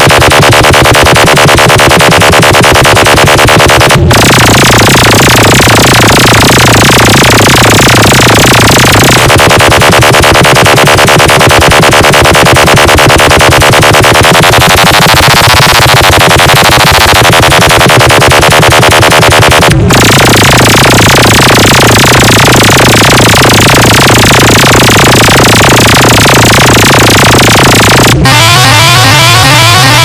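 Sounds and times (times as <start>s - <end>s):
wavering synth sweep: 13.5s - 30.0s.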